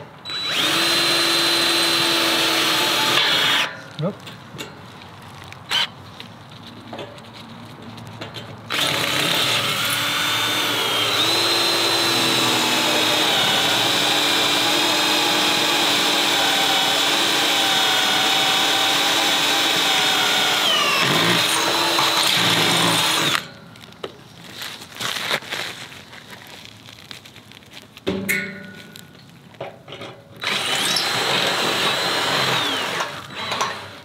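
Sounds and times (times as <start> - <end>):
electric drill boring through metal: 0.2 - 3.8, 8.7 - 23.5, 30.4 - 34.0.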